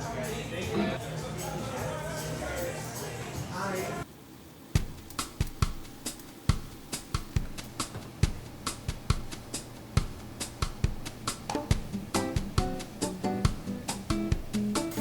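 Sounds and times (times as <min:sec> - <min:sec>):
background music: 0:00.0 - 0:04.0, 0:05.8 - 0:15.0
sparse drum beat: 0:04.8 - 0:15.0.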